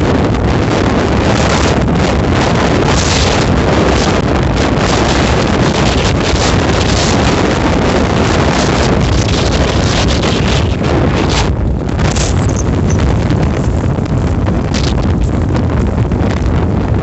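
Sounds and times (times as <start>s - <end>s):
strong wind buffeting microphone: 0.0s - 17.0s.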